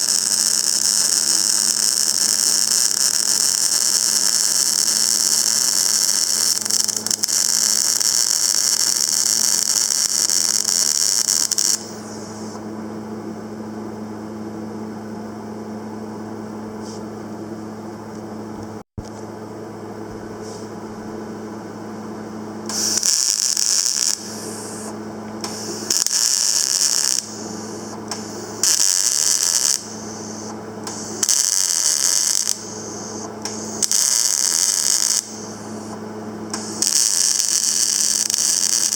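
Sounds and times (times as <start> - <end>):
welding arc crackling: 0.0 - 12.6, 22.7 - 38.9
welder electrical hum: 0.0 - 38.9.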